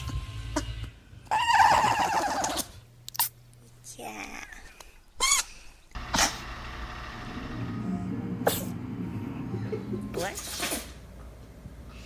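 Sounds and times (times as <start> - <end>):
pet sneezing: 8.4 - 8.8.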